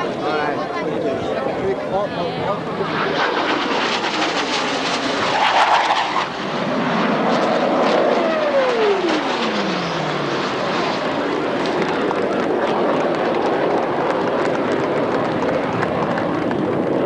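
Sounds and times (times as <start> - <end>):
jet flypast: 0.0 - 17.0.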